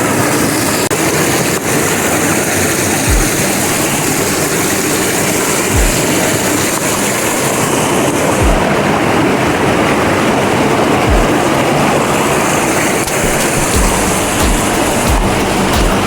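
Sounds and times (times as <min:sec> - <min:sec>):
rushing mountain water: 0:00.0 - 0:16.0
low thumps: 0:03.1 - 0:03.5, 0:08.4 - 0:08.8, 0:11.0 - 0:11.5, 0:13.1 - 0:16.0.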